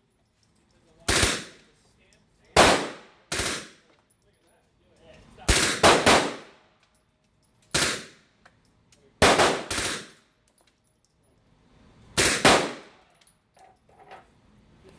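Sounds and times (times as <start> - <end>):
suppressed gunshots: 1.1 - 1.6, 2.6 - 3.8, 5.5 - 6.5, 9.2 - 10.1, 12.2 - 13.0.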